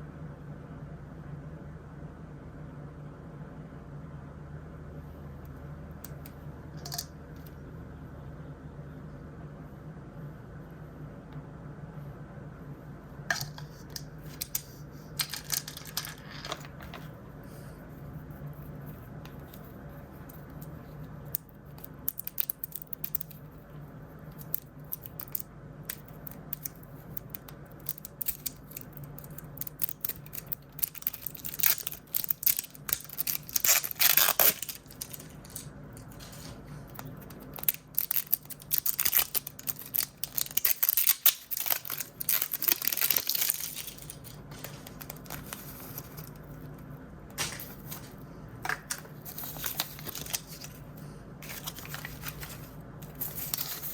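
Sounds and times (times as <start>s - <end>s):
faint steady hum: 0.0s - 53.9s
plastic packaging crinkling and tearing: 14.2s - 16.2s, 21.3s - 23.4s, 24.4s - 46.7s, 48.7s - 53.9s.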